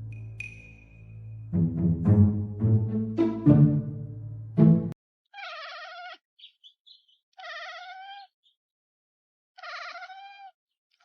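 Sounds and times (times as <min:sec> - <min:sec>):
music: 0:00.0 - 0:05.0
cat trilling meows: 0:05.3 - 0:06.2, 0:07.4 - 0:08.3, 0:09.6 - 0:11.0
faint cat chirps: 0:09.6 - 0:11.0.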